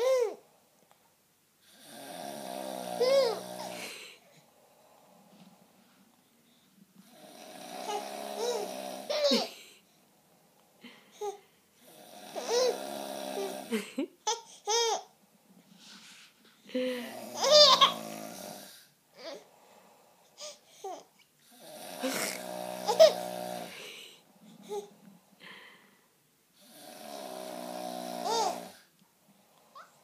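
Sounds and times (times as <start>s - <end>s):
man snoring: 1.6s - 4.2s, 7.0s - 9.2s, 11.8s - 14.0s, 16.8s - 18.9s, 21.5s - 24.2s, 26.6s - 28.9s.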